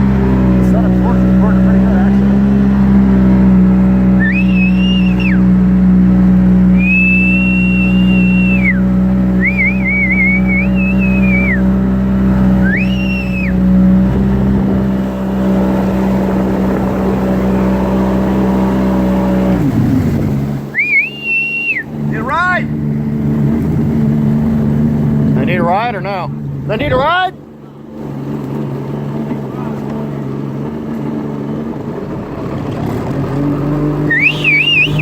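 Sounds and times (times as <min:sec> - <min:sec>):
engine running steadily: 0:00.0 - 0:35.0
high whistling tone: 0:04.2 - 0:05.5, 0:06.7 - 0:11.7, 0:12.6 - 0:13.7, 0:20.7 - 0:22.0, 0:34.1 - 0:35.0.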